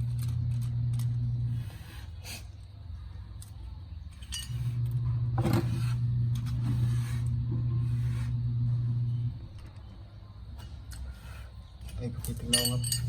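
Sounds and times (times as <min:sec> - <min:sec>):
machine motor humming: 0:04.8 - 0:09.5.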